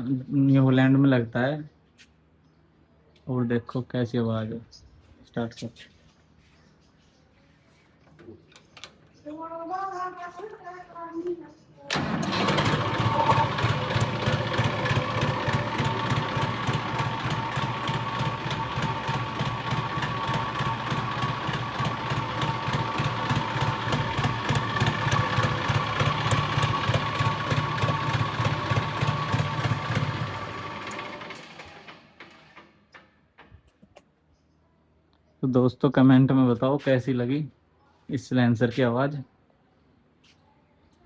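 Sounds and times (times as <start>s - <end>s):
diesel tractor engine idling: 11.9s - 32.0s.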